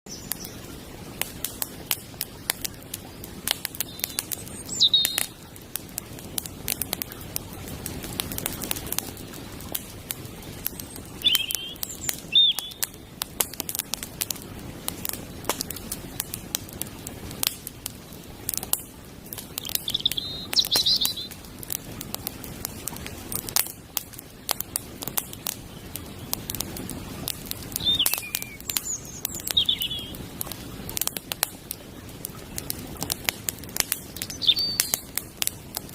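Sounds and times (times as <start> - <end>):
bird chirping: 0.1 - 0.6, 3.8 - 5.3, 10.7 - 12.9, 19.6 - 21.4, 27.8 - 30.4, 34.1 - 35.1
campfire crackling and popping: 0.1 - 35.9.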